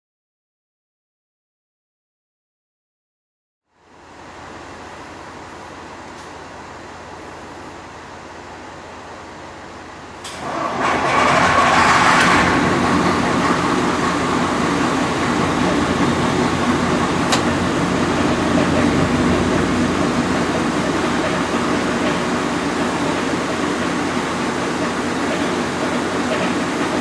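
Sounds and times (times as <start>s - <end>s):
railbus diesel drone: 3.7s - 27.0s
wheel-on-rail rush: 10.2s - 27.0s.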